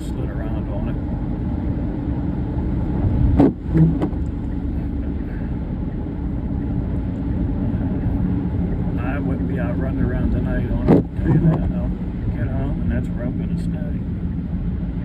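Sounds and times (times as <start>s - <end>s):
car engine and tyres rumble: 0.0s - 15.0s
sharp thump: 3.4s - 4.2s.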